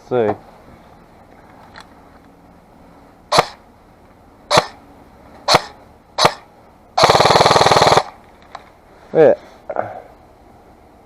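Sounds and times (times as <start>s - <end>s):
airsoft gun shots: 3.3s - 3.6s, 4.5s - 4.8s, 5.5s - 8.2s.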